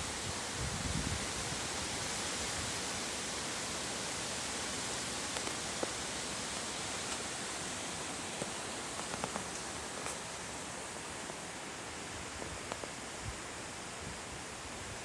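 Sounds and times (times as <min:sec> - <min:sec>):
wind rustling tree leaves: 0:00.0 - 0:15.0
faint ticks: 0:12.4 - 0:13.0.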